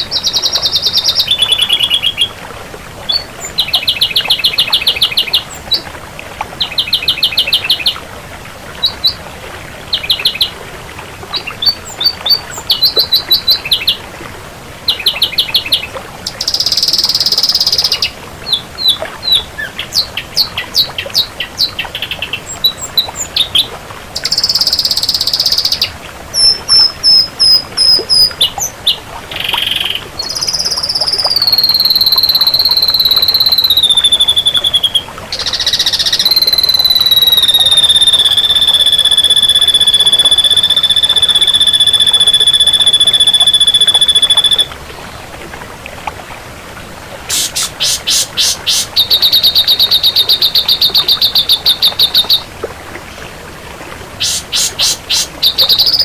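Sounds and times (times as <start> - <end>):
bird whistling song: 0.0 - 2.4, 3.1 - 5.8, 11.4 - 14.0, 14.9 - 44.7, 47.3 - 52.5, 54.2 - 56.0
buzzy bird trills: 29.4 - 44.7, 47.3 - 52.4, 54.2 - 56.0.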